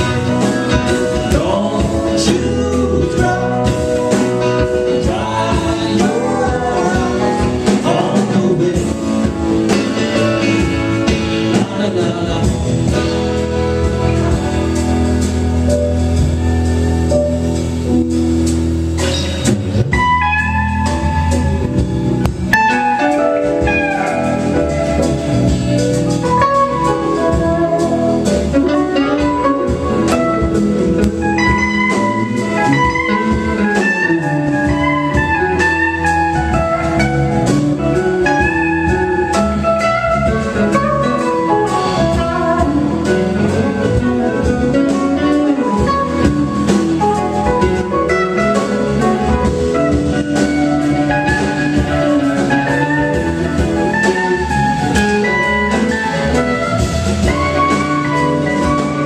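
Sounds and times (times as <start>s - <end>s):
rock band playing: 0.0s - 59.0s
lead guitar runs: 18.8s - 59.0s.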